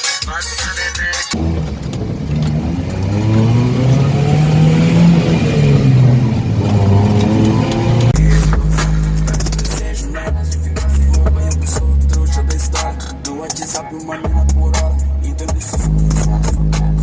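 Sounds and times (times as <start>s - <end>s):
music: 0.0s - 1.4s, 8.2s - 17.0s
car engine revving: 1.3s - 17.0s.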